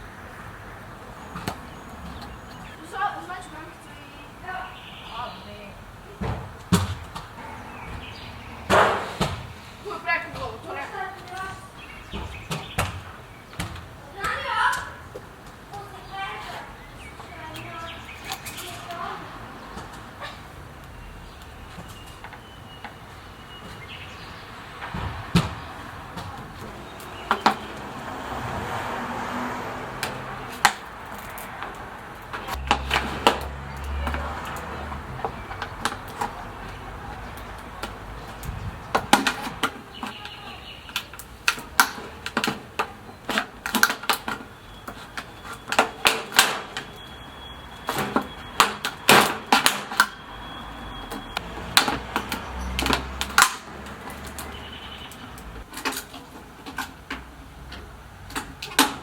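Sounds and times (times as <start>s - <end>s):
plastic bottles clicking and tapping: 30.0s - 46.9s.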